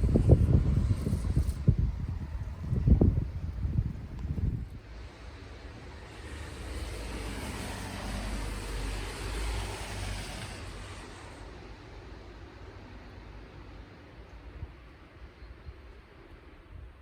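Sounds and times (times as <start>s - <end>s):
vehicle passing by: 5.0s - 12.2s.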